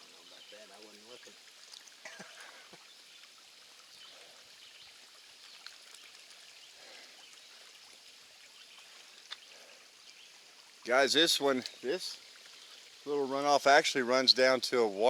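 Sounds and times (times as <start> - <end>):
small stream trickling: 0.0 - 15.0
faint clicks: 9.2 - 9.5.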